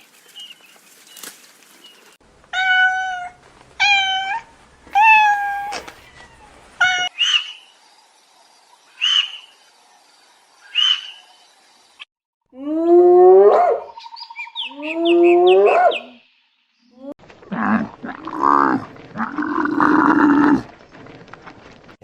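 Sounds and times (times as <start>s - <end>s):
animal calling with rising pitch: 2.6s - 7.1s, 12.6s - 16.2s
cat meowing: 2.6s - 7.1s.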